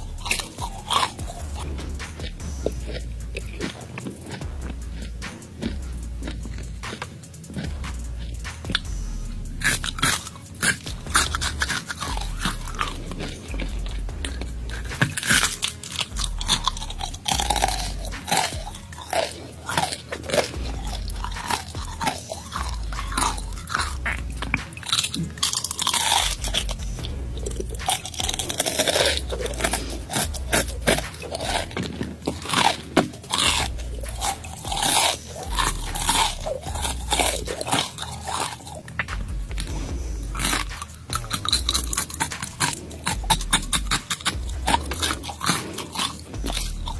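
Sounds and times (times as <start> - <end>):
crunching and chewing: 0.0 - 46.9
mouth sounds: 0.0 - 46.9.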